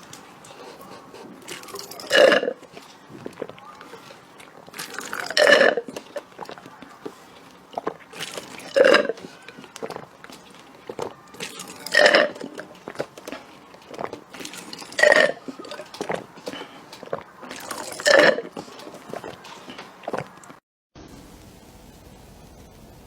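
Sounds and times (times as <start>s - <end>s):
person burping: 8.7s - 9.2s.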